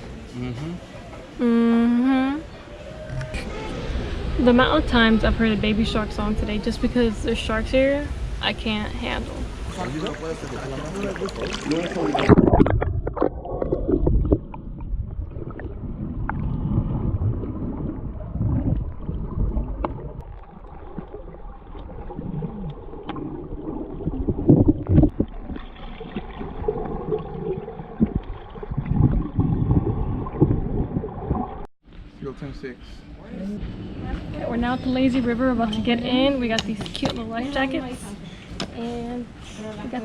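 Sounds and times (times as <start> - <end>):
underwater sloshing and bubbling: 9.0 - 31.7.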